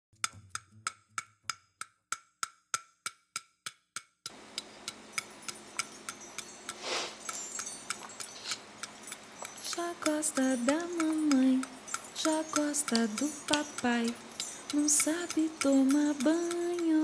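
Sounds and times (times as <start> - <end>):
wood-block ticks: 0.2 - 17.0
short hiss: 6.7 - 8.6.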